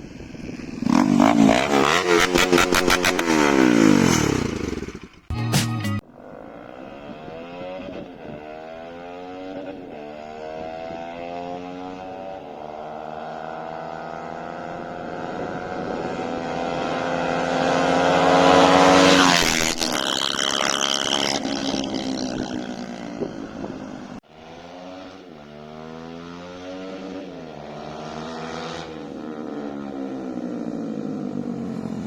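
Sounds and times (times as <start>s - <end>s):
motorcycle exhaust fly-by: 0.0s - 5.3s, 6.0s - 32.0s
motorcycle revving and shifting gears: 0.0s - 5.3s, 6.0s - 32.0s.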